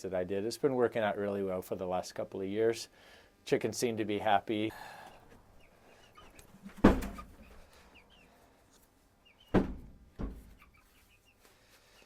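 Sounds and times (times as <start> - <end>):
chickens making soft calls: 5.0 - 9.6, 10.4 - 12.0
dull knocks: 9.5 - 10.6.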